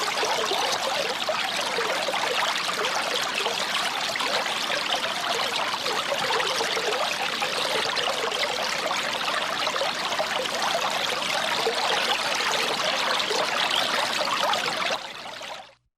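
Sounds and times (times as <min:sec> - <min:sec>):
fountain water splashing: 0:00.0 - 0:15.5.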